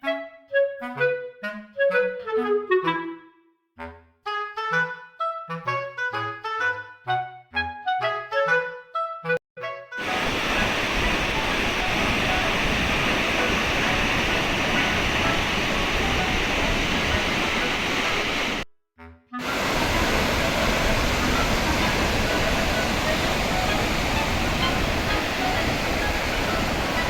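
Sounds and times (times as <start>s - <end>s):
waterfall rushing: 10.0s - 18.6s, 19.4s - 27.0s.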